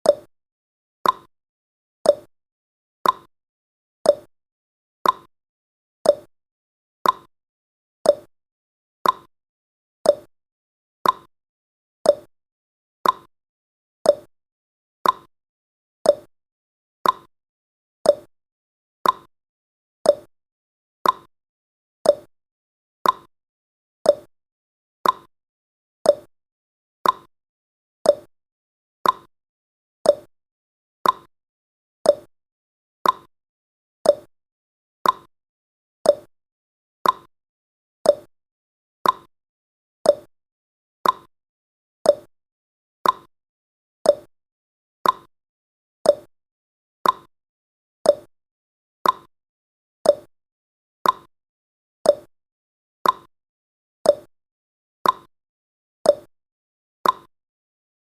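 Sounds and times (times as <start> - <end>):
timer ticking: 0.0 - 0.3, 1.0 - 1.3, 2.1 - 2.3, 3.0 - 3.3, 4.1 - 4.3, 5.0 - 5.3, 6.1 - 6.3, 7.0 - 7.3, 8.1 - 8.3, 9.0 - 9.3, 10.1 - 10.3, 11.0 - 11.3, 12.1 - 12.3, 13.0 - 13.3, 14.1 - 14.3, 15.0 - 15.3, 16.1 - 16.3, 17.0 - 17.3, 18.1 - 18.3, 19.0 - 19.3, 20.1 - 20.3, 21.0 - 21.3, 22.0 - 22.3, 23.0 - 23.3, 24.1 - 24.3, 25.0 - 25.3, 26.1 - 26.3, 27.0 - 27.3, 28.0 - 28.3, 29.0 - 29.3, 30.0 - 30.3, 31.0 - 31.3, 32.1 - 32.3, 33.0 - 33.3, 34.0 - 34.3, 35.0 - 35.3, 36.0 - 36.3, 37.0 - 37.3, 38.0 - 38.3, 39.0 - 39.3, 40.1 - 40.3, 41.0 - 41.3, 42.1 - 42.3, 43.0 - 43.3, 44.1 - 44.3, 45.0 - 45.3, 46.1 - 46.3, 47.0 - 47.3, 48.1 - 48.3, 49.0 - 49.3, 50.1 - 50.3, 51.0 - 51.3, 52.1 - 52.3, 53.0 - 53.3, 54.1 - 54.3, 55.0 - 55.3, 56.1 - 56.3, 57.0 - 57.3.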